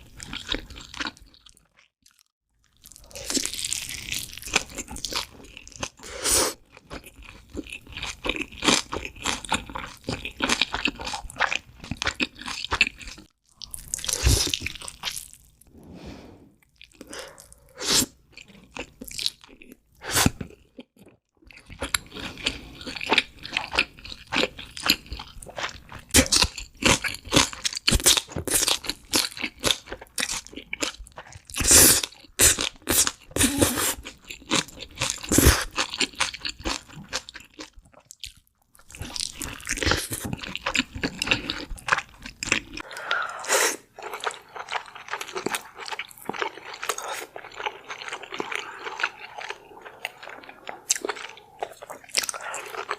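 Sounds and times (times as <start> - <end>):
crunching and chewing: 0.0 - 15.6, 16.6 - 43.1, 43.8 - 52.9.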